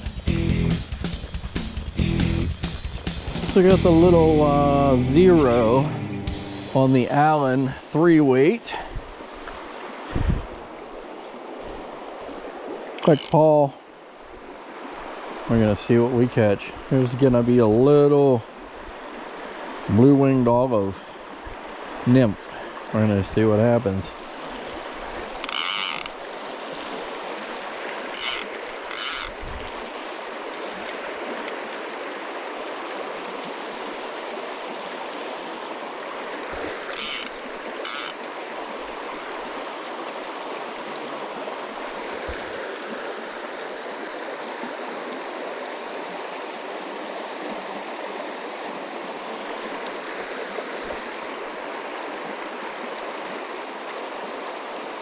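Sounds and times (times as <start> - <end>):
mountain stream rushing: 0.8 - 55.0
fishing reel drag clicking: 13.0 - 13.4, 25.4 - 26.2, 28.1 - 29.5, 36.8 - 38.4.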